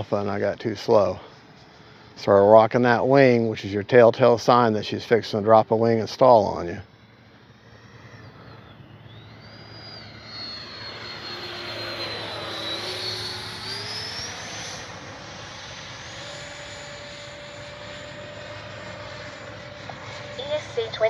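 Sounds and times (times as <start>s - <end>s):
electric jet fan whine: 6.4s - 21.0s.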